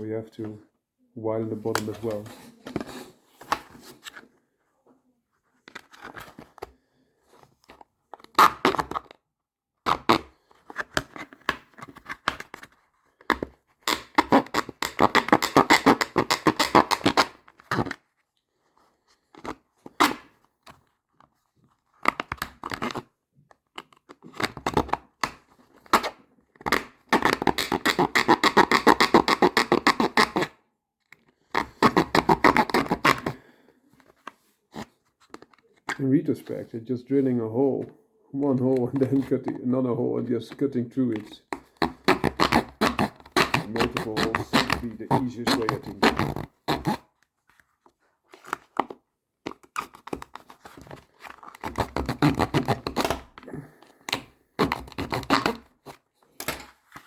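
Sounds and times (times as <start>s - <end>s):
file scraping back and forth: 31.6s - 33.5s, 41.2s - 47.0s.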